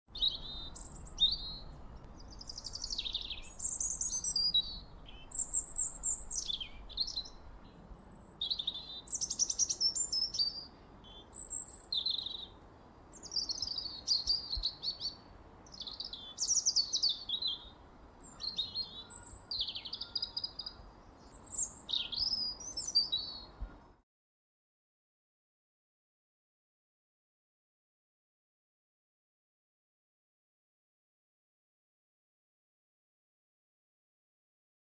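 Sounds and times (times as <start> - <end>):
songbird singing: 0.1 - 24.0.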